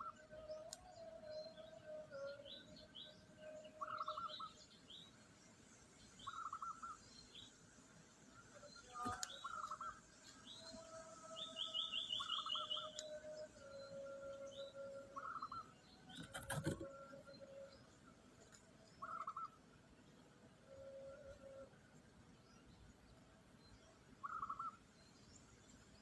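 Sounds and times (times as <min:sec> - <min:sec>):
high bird chirps: 0:06.2 - 0:07.3, 0:08.8 - 0:16.9.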